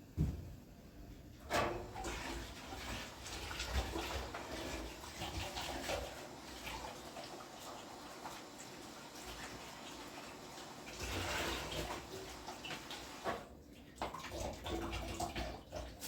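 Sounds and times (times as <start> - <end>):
knock: 0.2 - 0.4
water running and splashing: 1.7 - 16.0.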